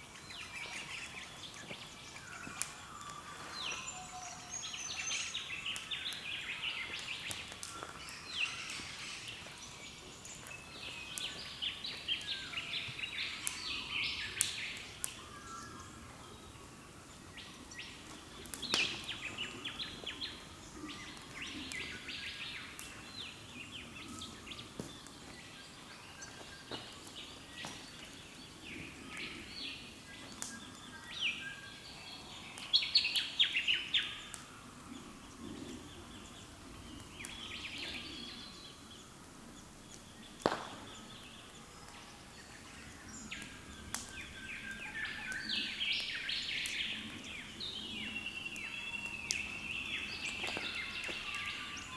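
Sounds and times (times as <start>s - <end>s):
birds chirping: 0.0s - 51.9s
sharp cracks: 40.4s - 41.1s.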